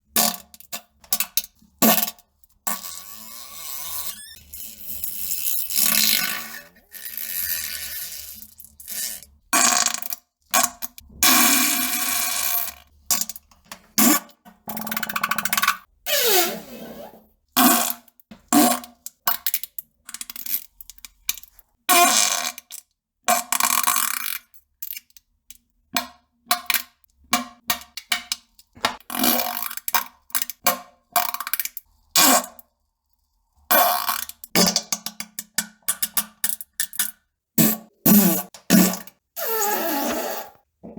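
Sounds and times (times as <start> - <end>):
farting: 37.6 - 40.9.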